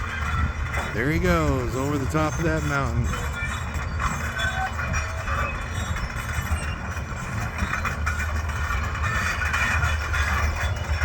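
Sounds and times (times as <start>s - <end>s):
heavy engine running: 0.0s - 11.0s.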